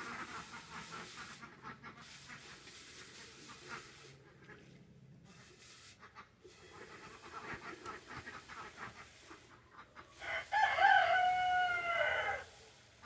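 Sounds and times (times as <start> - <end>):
rooster crowing: 10.2 - 12.6.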